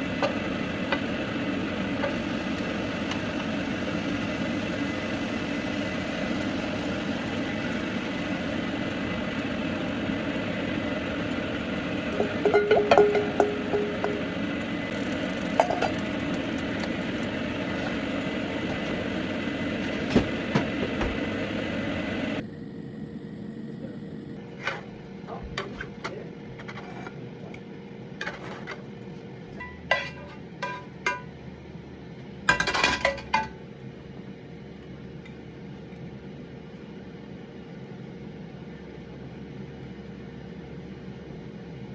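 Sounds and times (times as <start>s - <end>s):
dishes and cutlery clinking: 12.2s - 14.2s, 29.6s - 31.3s.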